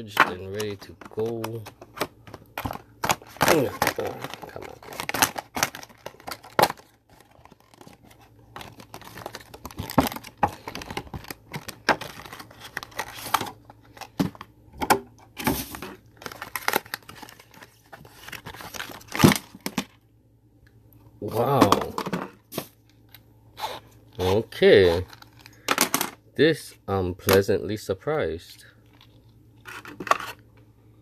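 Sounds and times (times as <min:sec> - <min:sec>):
packaging tearing and crinkling: 0:00.1 - 0:14.2, 0:15.5 - 0:19.9, 0:23.6 - 0:25.7.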